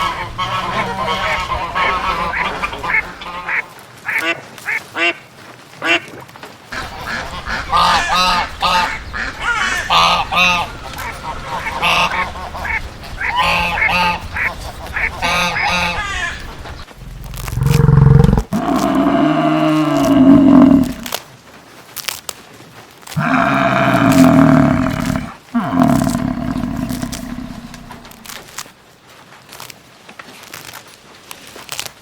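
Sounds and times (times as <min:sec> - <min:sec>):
honking calls: 0:00.0 - 0:03.6, 0:06.8 - 0:21.1, 0:23.1 - 0:28.4
long low animal calls: 0:06.8 - 0:21.2, 0:23.1 - 0:28.6.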